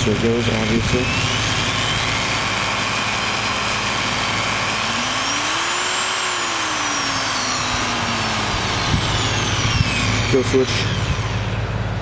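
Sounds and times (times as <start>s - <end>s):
drill press motor running: 0.0s - 12.0s.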